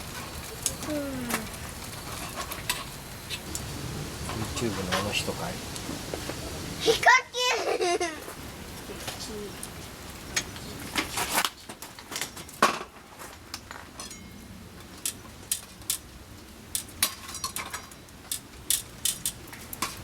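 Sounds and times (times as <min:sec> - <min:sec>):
cooking utensils clinking: 0:13.7 - 0:14.4.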